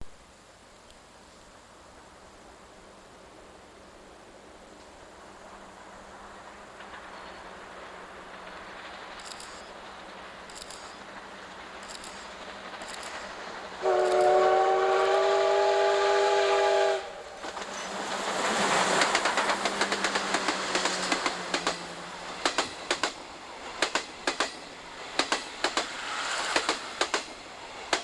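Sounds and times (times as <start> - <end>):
train running noise: 1.5 - 28.0
wheels clicking over rail joints: 6.2 - 14.4, 17.4 - 28.0
steam locomotive whistle: 13.8 - 18.9.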